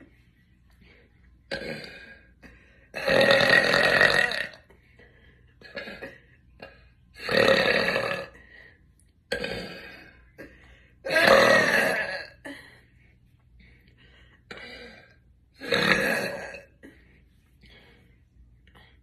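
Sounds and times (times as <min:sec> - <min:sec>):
woman burping loudly: 0:01.5 - 0:04.7, 0:05.6 - 0:08.4, 0:09.3 - 0:12.6, 0:14.8 - 0:16.9.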